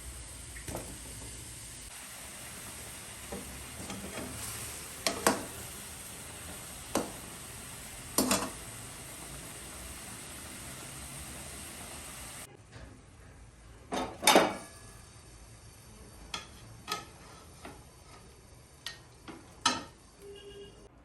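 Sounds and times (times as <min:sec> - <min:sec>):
chicken sizzling in hot oil: 0:00.0 - 0:12.5
metal utensil clinking on pan: 0:08.2 - 0:08.6.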